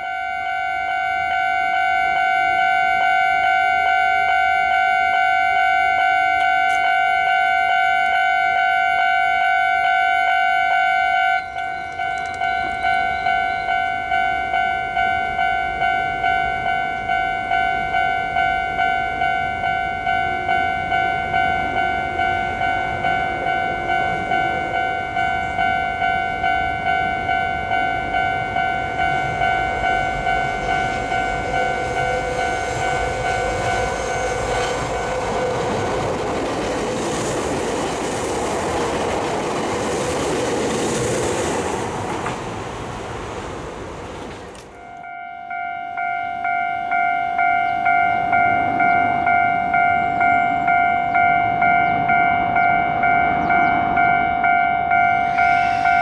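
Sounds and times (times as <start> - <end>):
level crossing warning bell: 0.0 - 37.6, 44.7 - 56.0
train rumble: 11.0 - 45.1, 46.3 - 56.0.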